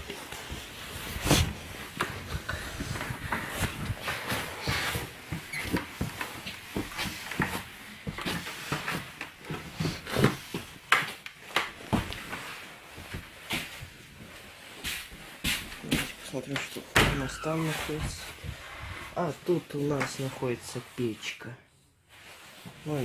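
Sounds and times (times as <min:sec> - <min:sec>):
footsteps: 0:00.0 - 0:11.2, 0:11.8 - 0:20.4.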